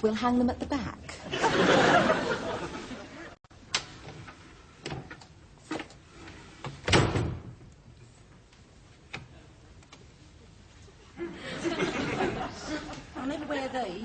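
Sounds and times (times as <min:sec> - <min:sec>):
studio audience laughter: 0:01.3 - 0:03.4, 0:11.2 - 0:13.4.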